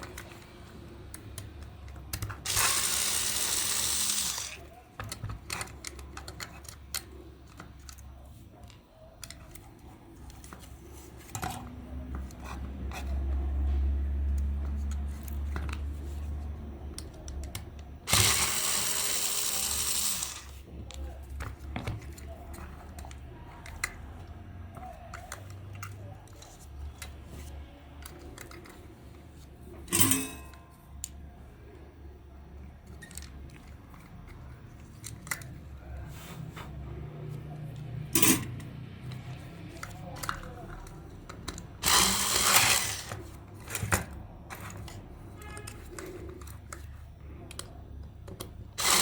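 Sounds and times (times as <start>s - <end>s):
clicks and knocks of small parts: 4.2s - 13.4s, 19.7s - 28.9s.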